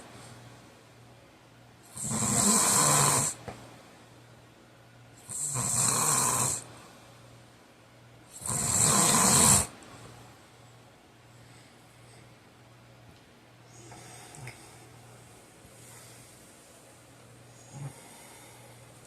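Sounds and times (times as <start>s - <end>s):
man snoring heavily: 2.0s - 3.4s, 5.3s - 6.6s, 8.4s - 9.7s.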